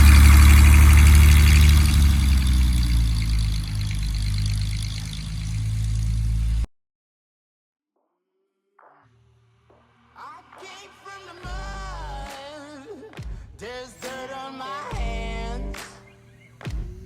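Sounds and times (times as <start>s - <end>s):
light aircraft engine and propeller: 0.0s - 6.6s.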